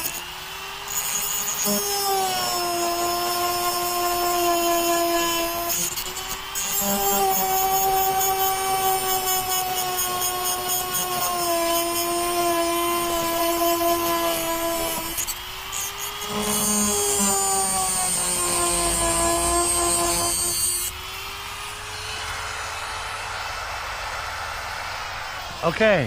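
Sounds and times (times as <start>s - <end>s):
rotary tool motor whine: 0.0s - 26.0s
disc grinding metal: 0.9s - 21.0s.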